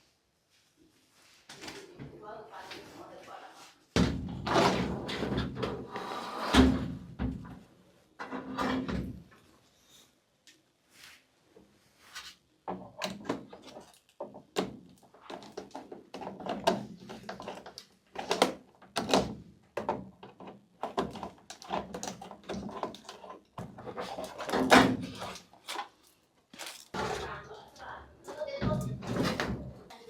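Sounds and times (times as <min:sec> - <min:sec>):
plastic parts knocking and rattling: 0:12.7 - 0:27.3.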